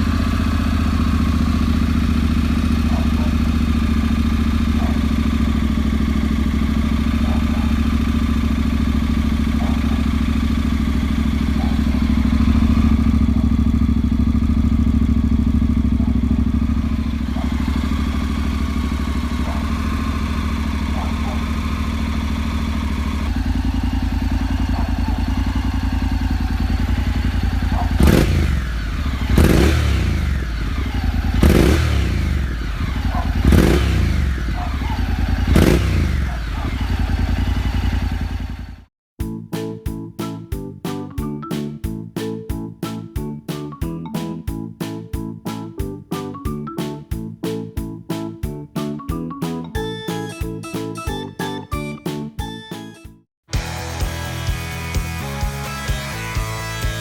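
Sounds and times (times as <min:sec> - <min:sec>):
motorcycle engine idling and revving: 0:00.0 - 0:38.9, 0:53.5 - 0:57.0.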